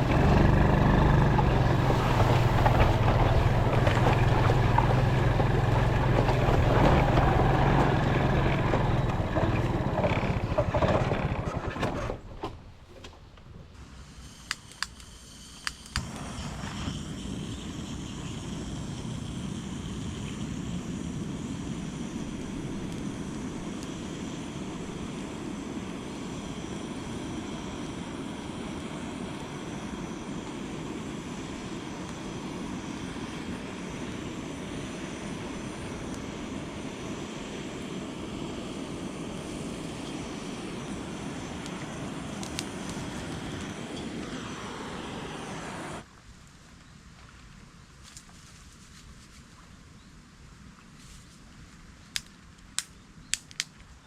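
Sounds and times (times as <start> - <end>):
gas burner roaring: 0.0 - 46.1
igniter clicks: 14.2 - 16.3, 41.6 - 44.1, 52.1 - 53.9.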